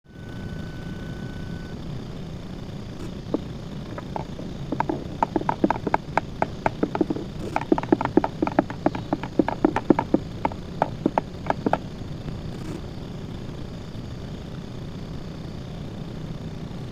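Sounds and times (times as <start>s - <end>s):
lawn mower engine running: 3.1s - 11.8s
screwdriver tapping on metal: 4.0s - 11.8s.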